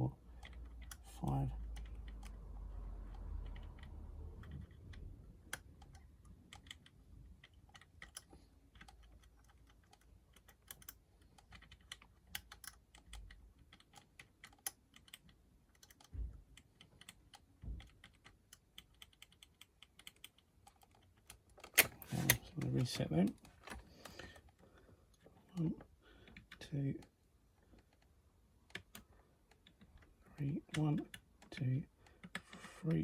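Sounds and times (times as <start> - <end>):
lock pick clicking in lock: 17.8 - 22.4.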